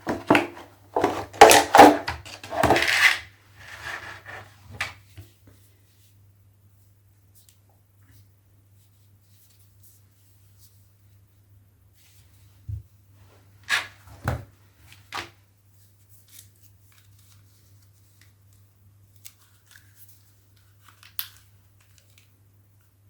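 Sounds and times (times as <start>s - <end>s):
packaging knock: 0.0s - 3.2s
packaging rustling and scraping: 0.0s - 4.9s.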